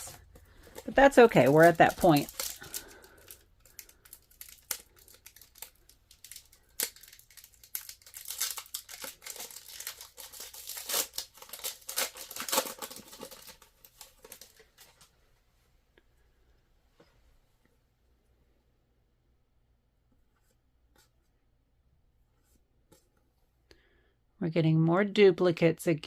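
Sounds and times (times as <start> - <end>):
wrapper crinkling and tearing: 0.0 - 15.1.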